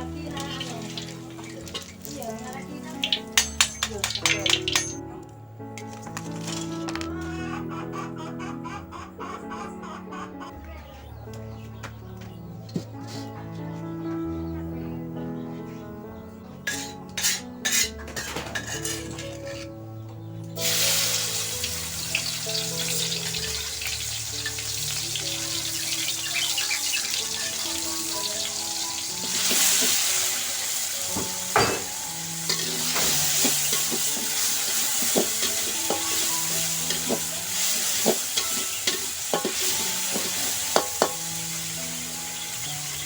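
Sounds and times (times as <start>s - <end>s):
food sizzling in hot oil: 0.0s - 5.0s, 20.6s - 43.0s
soft background music: 0.0s - 43.0s
spatula scraping a pan: 16.7s - 19.8s, 32.4s - 41.3s.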